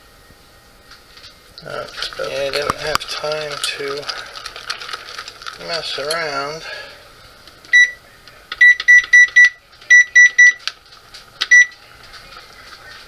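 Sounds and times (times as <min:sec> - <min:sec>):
keypad beeps: 0:07.7 - 0:08.0, 0:08.6 - 0:10.6, 0:11.5 - 0:11.7.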